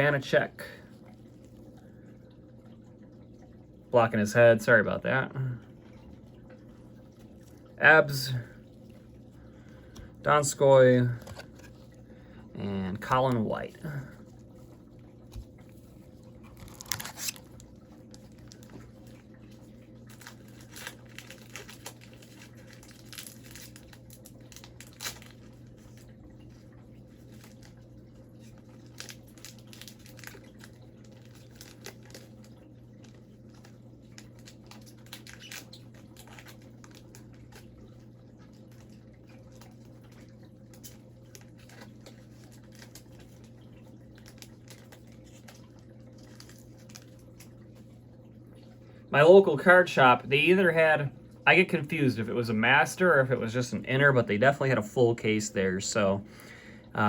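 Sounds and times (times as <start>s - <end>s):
foil card pack crinkling: 15.4s - 47.6s.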